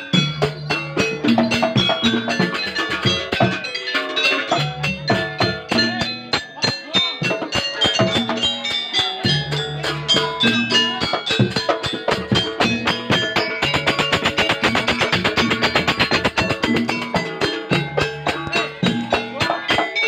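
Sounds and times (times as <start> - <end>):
rapid hand drum strokes: 9.2 - 20.0.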